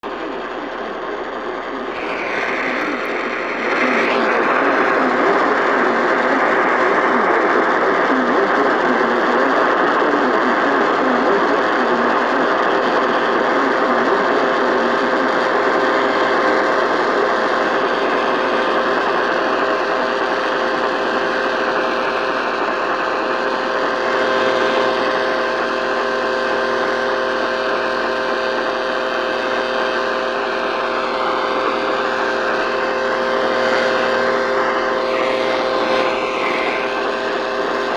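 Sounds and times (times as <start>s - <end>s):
radio static hiss: 0.0s - 37.9s.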